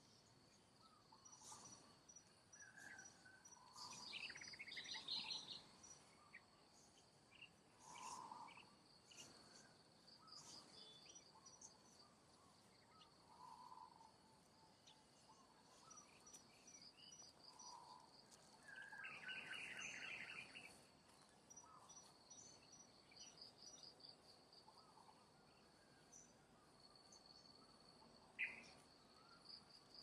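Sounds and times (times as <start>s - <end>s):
insects buzzing and chirping: 0.0s - 30.0s.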